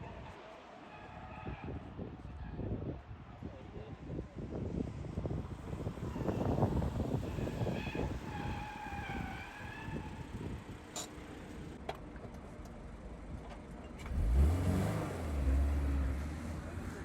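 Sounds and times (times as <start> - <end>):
car engine revving: 14.0 - 17.0.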